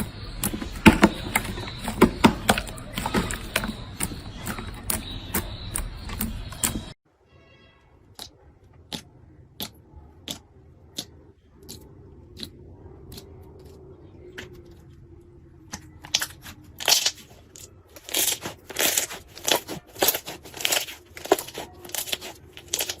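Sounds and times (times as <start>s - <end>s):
slime crackling and popping: 15.7s - 23.0s.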